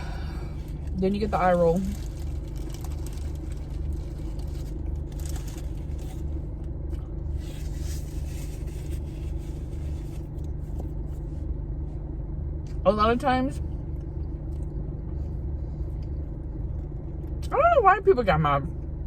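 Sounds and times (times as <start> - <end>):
steady low hum: 0.0 - 19.0
person chewing food: 13.8 - 17.4.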